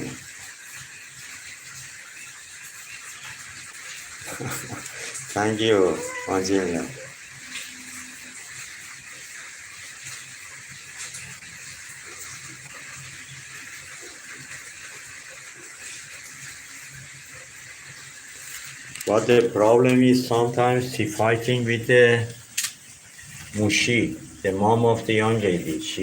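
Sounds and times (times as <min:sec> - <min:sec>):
steady background hiss: 0:04.2 - 0:08.4, 0:18.4 - 0:26.0.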